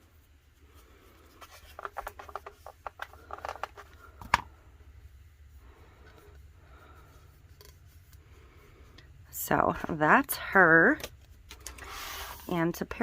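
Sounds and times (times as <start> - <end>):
low steady hum: 0.0 - 13.0
squeegee scratchy rubbing: 11.8 - 12.7.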